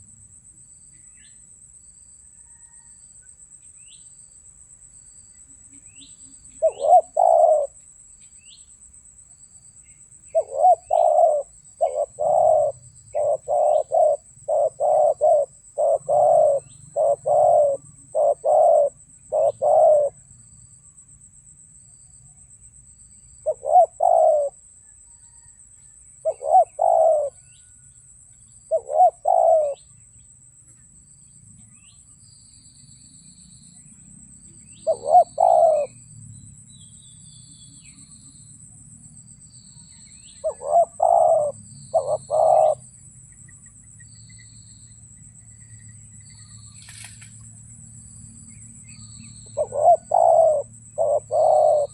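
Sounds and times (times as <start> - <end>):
cricket trill: 0.0 - 51.9
faint small bird chirps: 0.8 - 1.4, 2.2 - 4.3, 5.1 - 8.9, 9.5 - 21.0, 22.2 - 38.7, 39.5 - 51.9
doves cooing: 6.6 - 7.8, 10.3 - 20.2, 23.4 - 24.6, 26.2 - 27.4, 28.7 - 29.8, 34.8 - 36.0, 40.4 - 42.9, 49.4 - 51.9.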